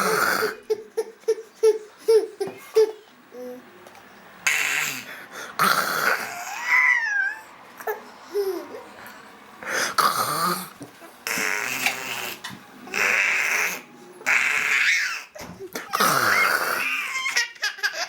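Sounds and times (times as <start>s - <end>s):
baby laughing and squealing: 12.9s - 18.0s.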